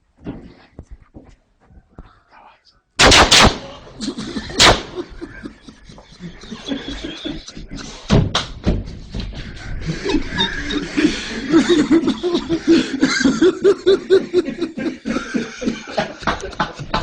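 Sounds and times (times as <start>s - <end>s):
person laughing: 3.6s - 8.0s, 9.8s - 17.0s.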